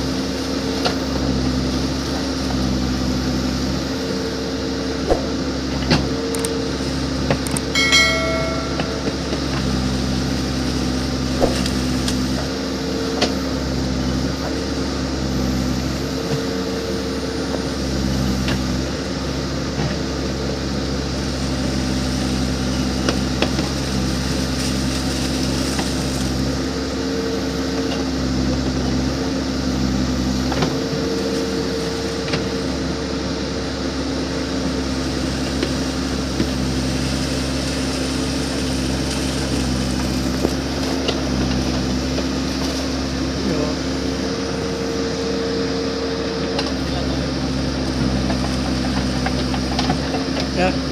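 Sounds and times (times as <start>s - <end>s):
diesel engine running: 0.0s - 50.9s
metal clank: 7.8s - 9.6s.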